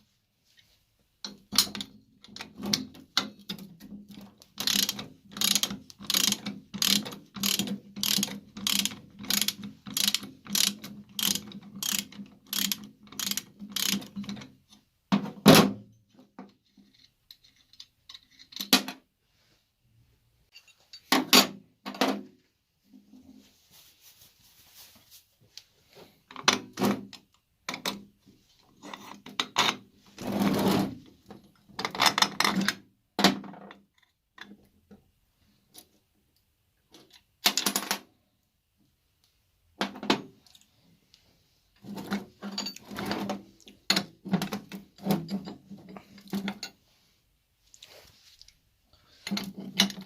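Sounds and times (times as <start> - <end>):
metal parts and tools clinking: 1.2 - 14.5, 16.6 - 18.9, 20.5 - 21.3, 41.8 - 46.8.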